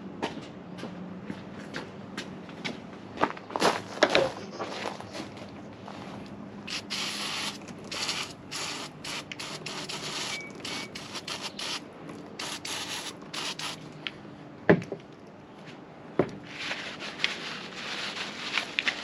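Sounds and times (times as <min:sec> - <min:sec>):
rag scrubbing a housing: 0:06.7 - 0:11.8, 0:12.4 - 0:13.9.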